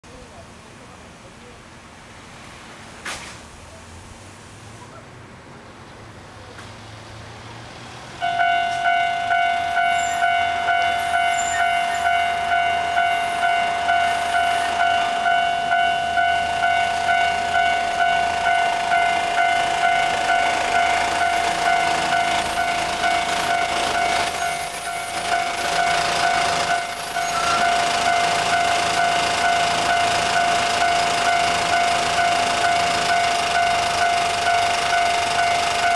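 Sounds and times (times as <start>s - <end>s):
approaching train rumble: 0.1s - 35.9s
level crossing warning bell: 8.2s - 35.9s.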